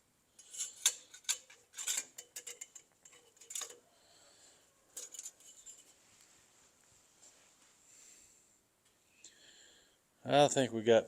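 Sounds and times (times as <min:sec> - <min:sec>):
light clicks and clinks: 0:00.4 - 0:03.9, 0:04.9 - 0:06.0.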